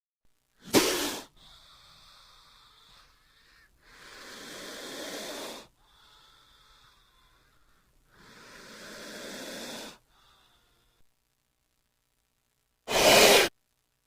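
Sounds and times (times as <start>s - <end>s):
snake hissing: 0.6s - 6.8s, 8.1s - 10.3s, 12.9s - 13.5s.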